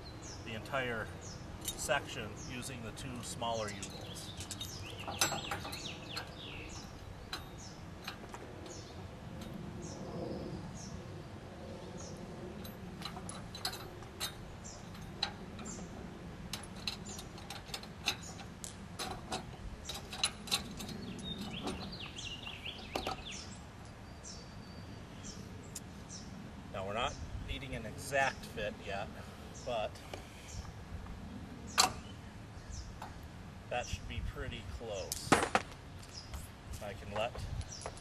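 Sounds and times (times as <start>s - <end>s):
birds chirping: 0.0s - 38.0s
metal clicks and clinks: 1.6s - 2.0s, 3.6s - 8.8s, 12.6s - 15.9s, 16.5s - 22.0s.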